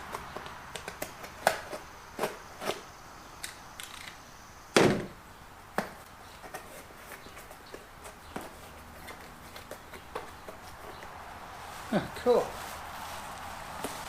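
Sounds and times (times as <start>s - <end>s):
loud thump: 4.8s - 5.2s.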